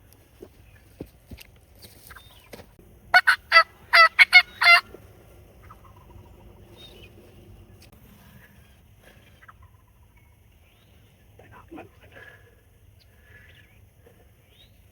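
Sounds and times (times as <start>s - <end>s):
wild turkey yelping: 3.1s - 4.9s.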